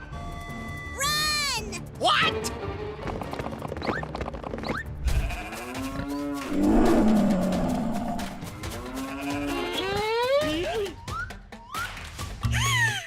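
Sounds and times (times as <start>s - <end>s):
background music: 0.0s - 13.0s
cartoon cows mooing: 6.5s - 8.6s.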